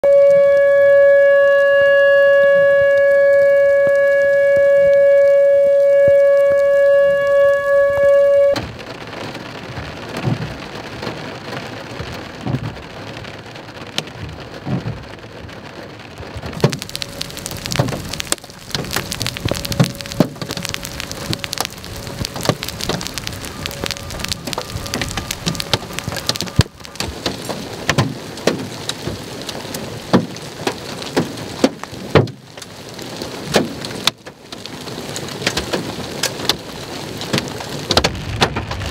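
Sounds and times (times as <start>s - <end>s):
warning siren steady tone: 0.0s - 8.6s, 16.6s - 27.8s
rain hiss: 0.0s - 38.9s
hailstones striking surfaces: 16.5s - 38.9s.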